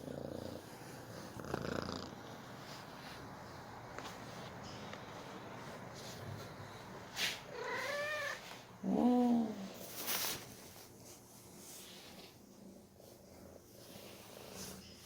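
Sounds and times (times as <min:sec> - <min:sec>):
cat meowing: 0:07.5 - 0:08.4.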